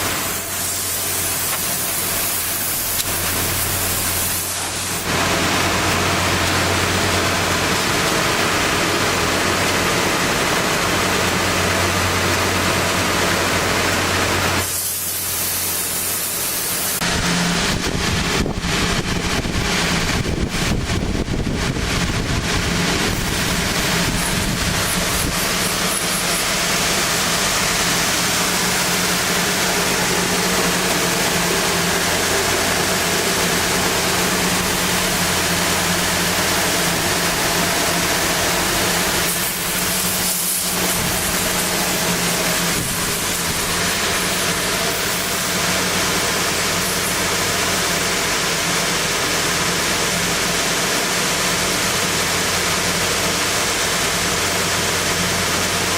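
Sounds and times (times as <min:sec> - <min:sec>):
low motor hum: 0:00.0 - 0:14.6, 0:17.0 - 0:45.7
sander rushing noise: 0:00.0 - 0:55.9.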